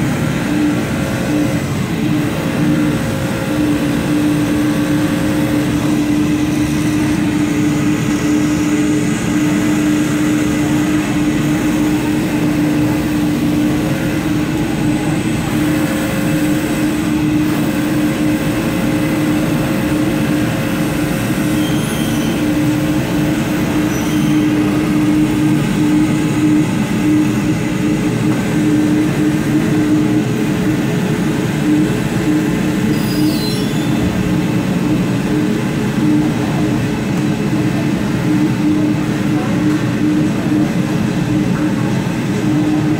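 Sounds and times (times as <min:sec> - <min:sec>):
cutting machine droning: 0:00.0 - 0:42.9.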